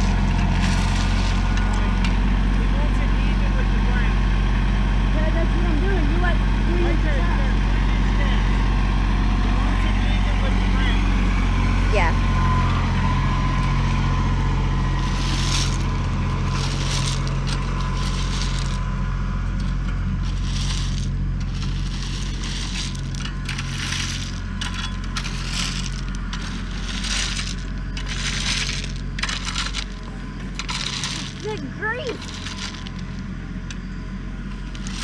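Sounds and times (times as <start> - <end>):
rake scraping rocky dirt: 0.0 - 2.2, 14.9 - 19.0, 19.6 - 33.4, 34.5 - 35.0
tractor engine hum: 0.0 - 35.0.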